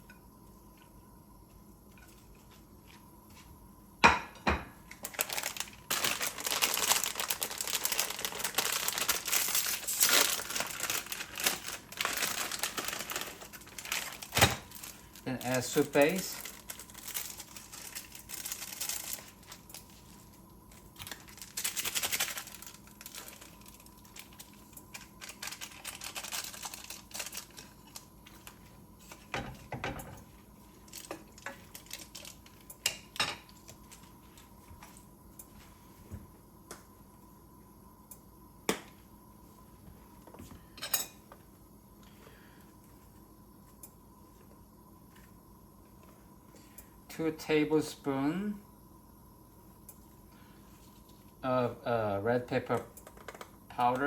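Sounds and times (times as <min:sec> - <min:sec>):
packet rustling: 0:04.9 - 0:29.7, 0:30.7 - 0:32.7.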